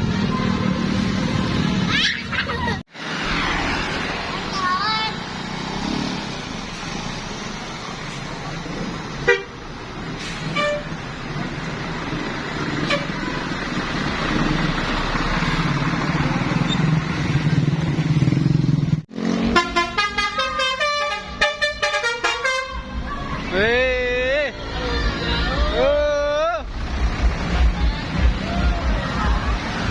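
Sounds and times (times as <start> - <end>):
large vehicle engine: 0.0 - 29.9
road traffic: 0.0 - 29.9
bus horn playing multi-tone tune: 9.2 - 9.6, 10.3 - 11.0, 12.8 - 13.4, 19.4 - 23.0.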